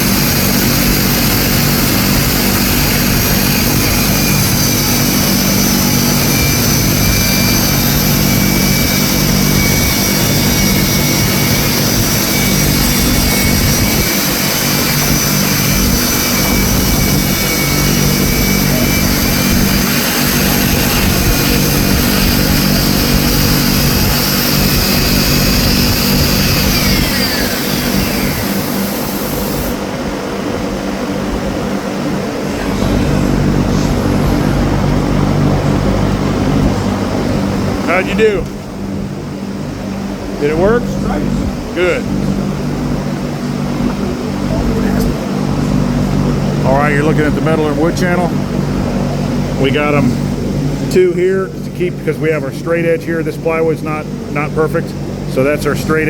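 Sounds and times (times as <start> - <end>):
circular saw cutting plywood: 0.0 - 30.0.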